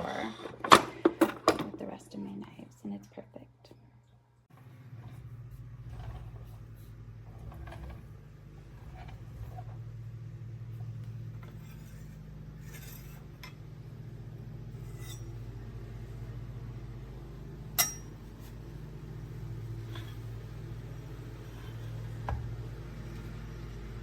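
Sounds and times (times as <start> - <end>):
steady low hum: 0.0 - 24.0
sharp metallic clink: 17.8 - 18.2.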